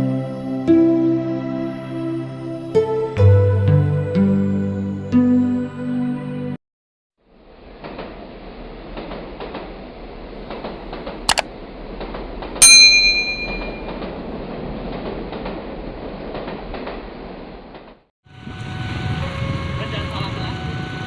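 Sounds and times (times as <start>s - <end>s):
train rumbling on rails: 7.3s - 21.0s
wheels clicking over rail joints: 10.4s - 18.0s
sharp metallic ring: 12.6s - 13.9s.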